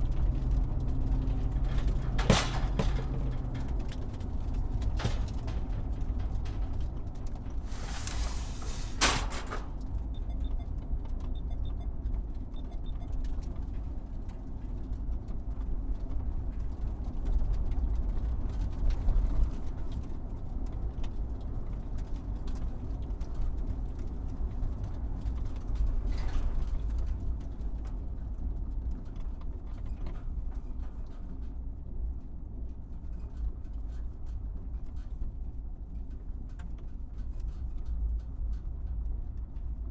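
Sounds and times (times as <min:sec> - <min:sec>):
truck knocking over bumps: 0:00.0 - 0:10.0
truck rumbling over bumpy surface: 0:00.0 - 0:10.4.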